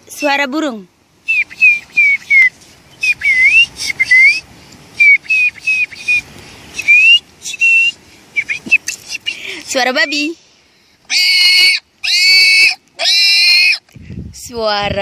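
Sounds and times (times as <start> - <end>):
boy whistling bird chirps: 1.2 - 10.4.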